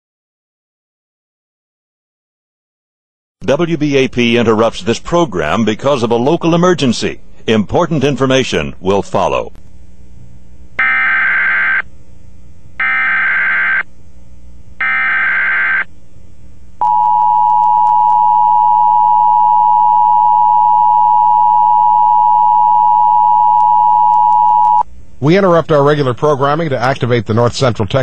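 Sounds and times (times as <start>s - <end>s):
digital data warble: 12.8s - 13.8s, 14.8s - 15.9s
two-tone attention signal: 16.8s - 24.8s.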